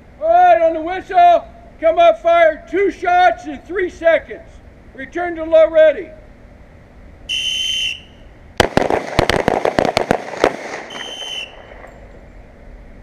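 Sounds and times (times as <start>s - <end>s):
range whistle blowing: 7.3s - 8.3s, 10.8s - 11.8s.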